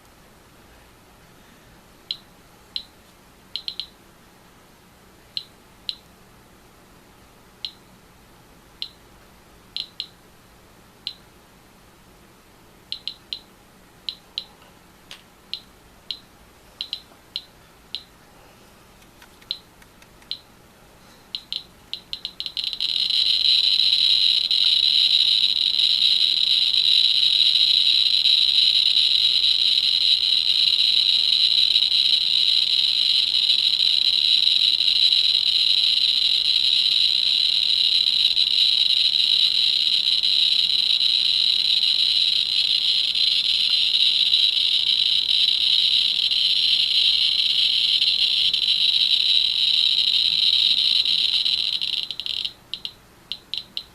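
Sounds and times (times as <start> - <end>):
geiger counter clicking: 3.6 - 3.9, 9.8 - 10.2, 12.9 - 13.5, 15.1 - 18.1, 21.4 - 53.9.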